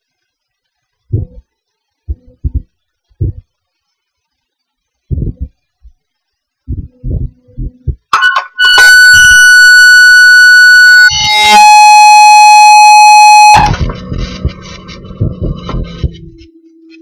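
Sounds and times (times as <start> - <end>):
loud electronic beeping: 8.6 - 13.8.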